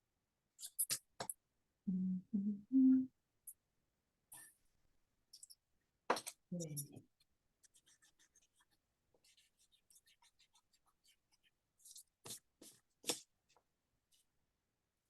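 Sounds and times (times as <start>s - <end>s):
drawing tool scratching on paper: 6.8s - 13.3s.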